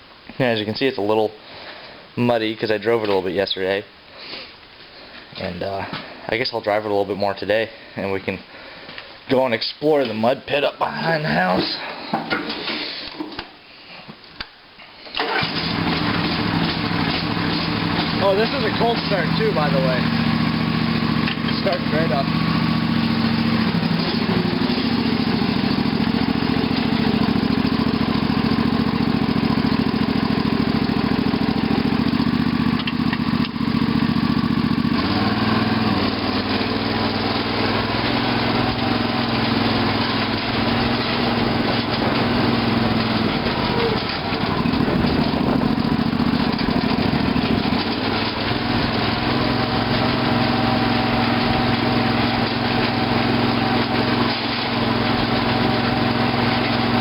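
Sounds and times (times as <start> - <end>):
lawn tractor engine running: 15.2 - 57.0.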